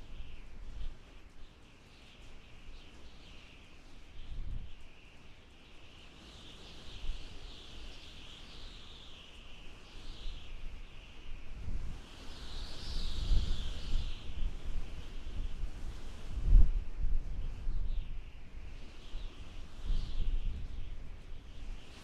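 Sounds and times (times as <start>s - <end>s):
blizzard wind gusting: 10.1s - 22.0s.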